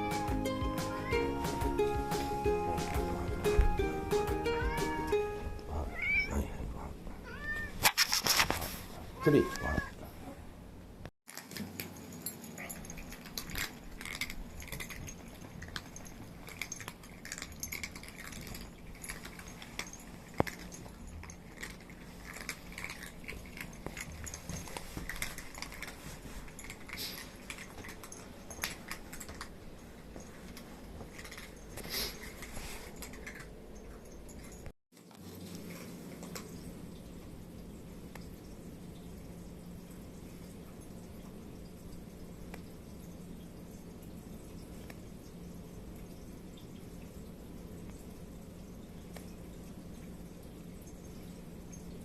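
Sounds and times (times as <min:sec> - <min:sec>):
kittens moving about: 0:05.4 - 0:10.2, 0:11.3 - 0:36.6.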